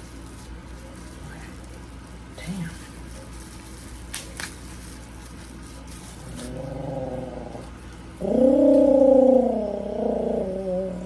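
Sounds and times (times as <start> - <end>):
dog whining: 6.7 - 11.0.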